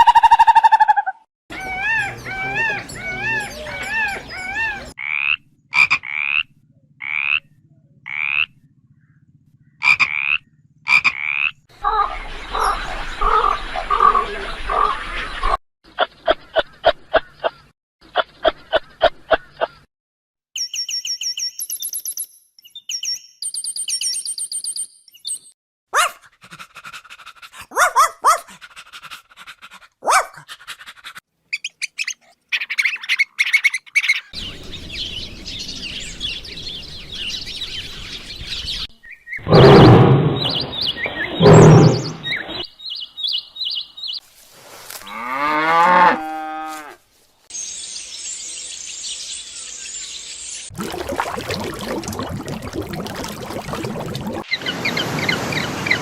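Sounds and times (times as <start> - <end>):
animal calls: 0.0 - 7.5, 39.4 - 42.6
high bird chirps: 20.6 - 25.5, 31.5 - 44.2.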